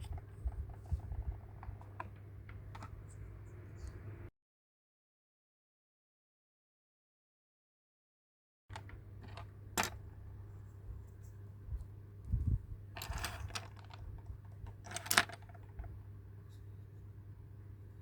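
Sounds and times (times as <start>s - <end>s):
steady low hum: 0.0s - 4.3s, 8.7s - 18.0s.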